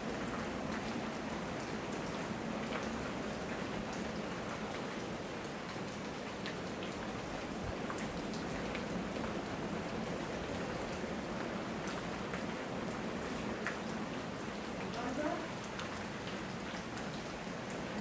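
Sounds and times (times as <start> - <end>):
steady rain hiss: 0.0 - 18.0.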